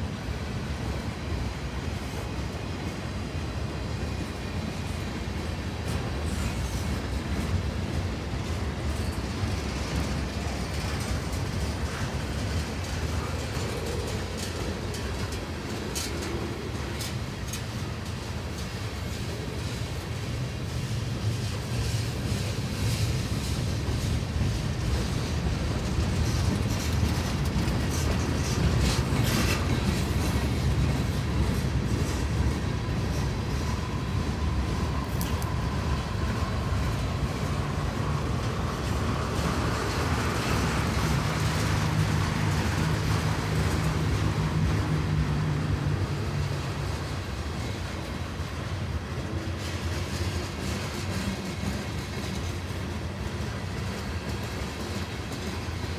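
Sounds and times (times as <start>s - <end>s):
train wheels rumbling on rail: 0.0s - 55.9s.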